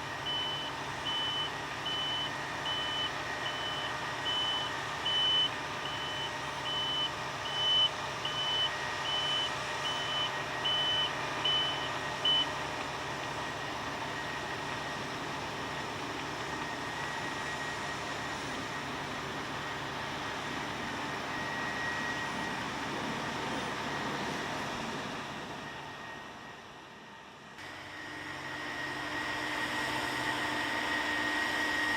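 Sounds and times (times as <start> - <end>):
heavy farm machinery running: 0.0 - 31.9
reversing alarm beeping: 0.1 - 12.7, 20.9 - 24.6.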